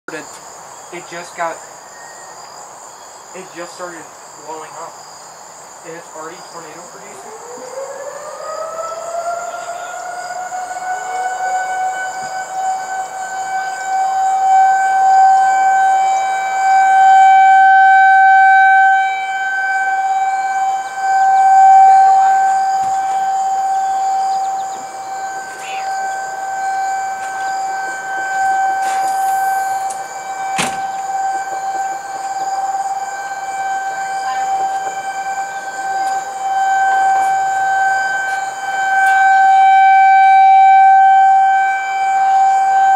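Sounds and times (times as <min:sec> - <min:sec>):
tornado siren wailing: 0:05.9 - 0:42.9.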